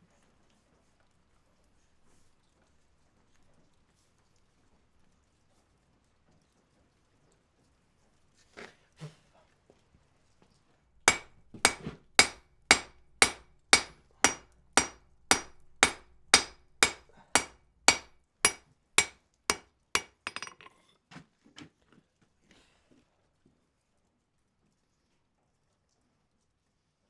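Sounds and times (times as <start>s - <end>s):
light metal taps and clinks: 11.1s - 19.1s, 20.0s - 20.8s
hammer striking iron on anvil: 11.1s - 20.7s.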